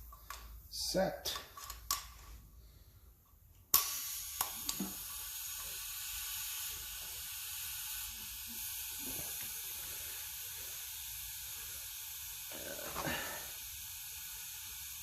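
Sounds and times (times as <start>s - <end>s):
compressed air hissing: 3.8s - 15.0s.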